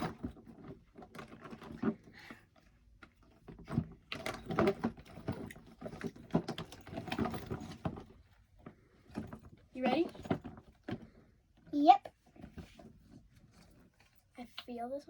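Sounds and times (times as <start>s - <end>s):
silicone toys clattering in a bucket: 3.3s - 11.3s.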